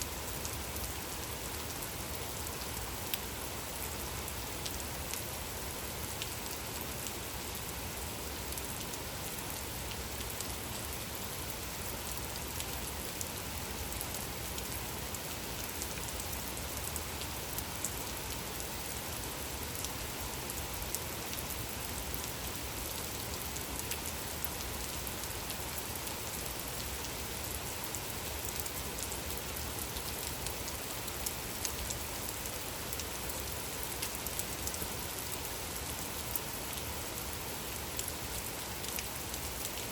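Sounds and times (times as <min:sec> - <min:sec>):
gentle rain hiss: 0:00.0 - 0:39.9
raindrop ticks: 0:27.8 - 0:35.5.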